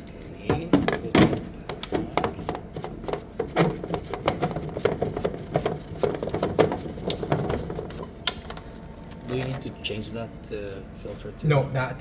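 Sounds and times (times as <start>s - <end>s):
filter parts clicking and knocking: 0.4s - 8.7s.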